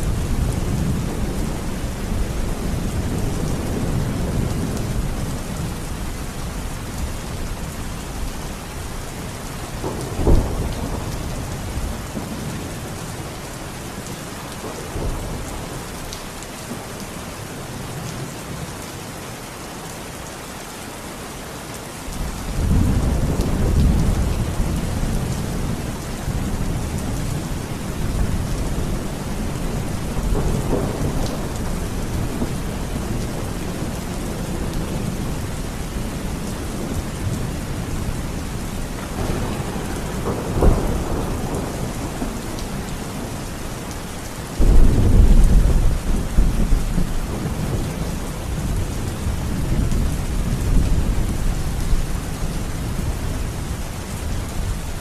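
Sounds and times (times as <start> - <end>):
low rumble of thunder: 0.0 - 13.3, 22.2 - 55.0
heavy rain: 0.0 - 55.0
thunder clap: 39.2 - 42.2.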